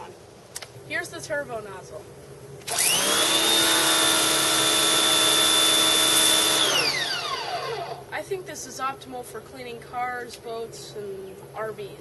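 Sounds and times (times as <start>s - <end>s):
pressure washer motor whining: 2.6s - 8.1s.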